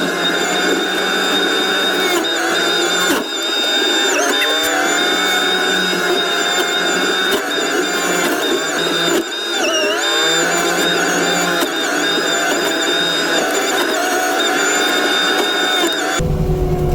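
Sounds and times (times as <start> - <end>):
loader engine with mulcher whine: 15.2 - 16.9.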